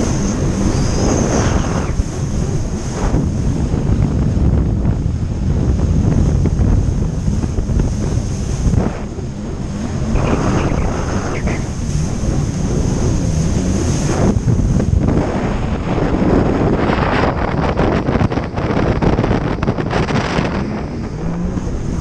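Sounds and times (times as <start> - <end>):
jet ski engine: 0.0 - 22.0
wind buffeting microphone: 0.0 - 22.0
rushing water: 5.4 - 22.0.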